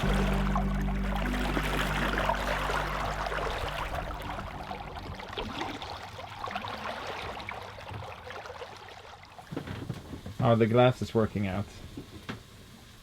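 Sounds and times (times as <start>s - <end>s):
low steady hum: 0.0s - 7.6s
water rushing along boat hull: 0.0s - 13.0s.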